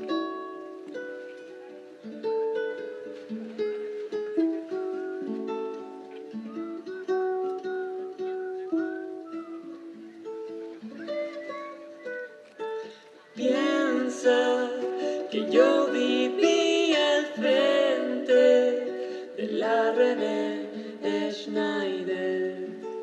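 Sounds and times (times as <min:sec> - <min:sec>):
plucked string instrument: 0:00.0 - 0:23.0.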